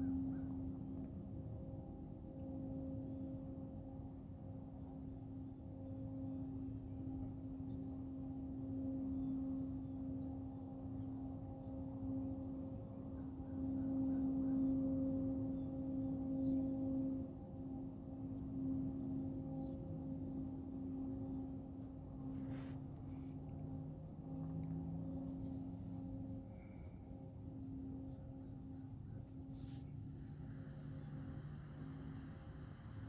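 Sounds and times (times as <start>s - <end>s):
low droning industrial hum: 14.0s - 33.0s.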